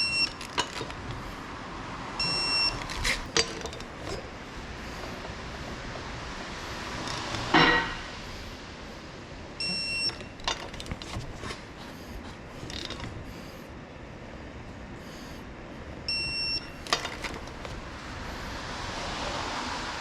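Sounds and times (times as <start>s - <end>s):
metal tools clanking: 0.0s - 1.4s, 2.2s - 5.4s, 6.4s - 8.2s, 9.7s - 11.8s
short electronic beep: 2.2s - 2.8s, 9.6s - 10.3s.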